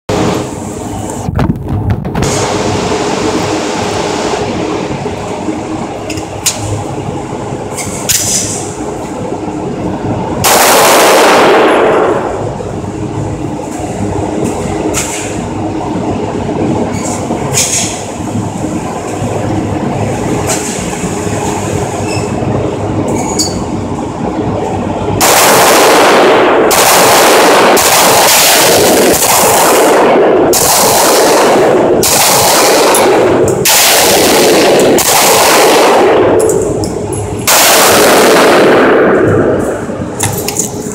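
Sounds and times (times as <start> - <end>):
steady background noise: 0.1 - 40.9
loud pistol shots: 10.4 - 12.4, 25.2 - 36.6, 37.4 - 39.8.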